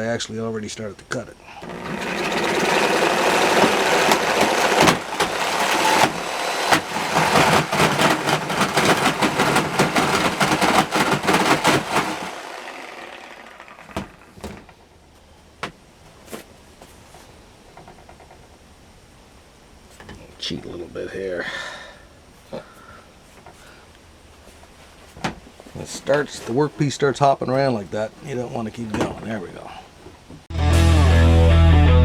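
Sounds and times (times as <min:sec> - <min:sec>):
knocks: 0:01.6 - 0:12.4, 0:13.8 - 0:14.8
reciprocating saw cutting sheet metal: 0:01.6 - 0:14.4.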